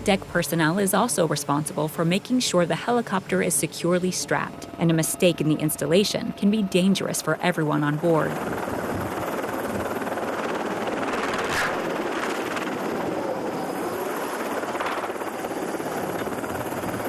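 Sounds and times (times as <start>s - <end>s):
helicopter rotor and engine: 0.0s - 17.0s.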